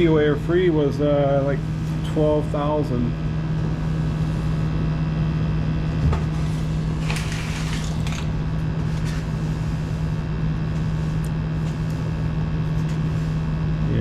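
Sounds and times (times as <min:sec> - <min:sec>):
furnace droning: 0:00.0 - 0:14.0
rustling or scraping: 0:06.3 - 0:10.0.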